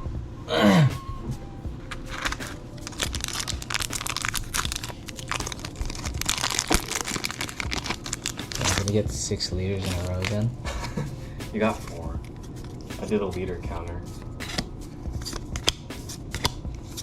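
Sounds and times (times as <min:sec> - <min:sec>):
foil wrappers crinkling and tearing: 0:01.9 - 0:10.7.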